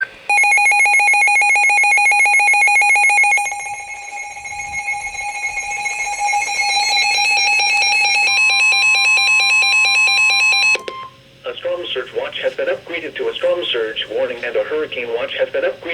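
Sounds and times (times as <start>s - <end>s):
steady warning tone: 0.0s - 11.2s
warbling electronic beep alarm: 0.3s - 11.2s.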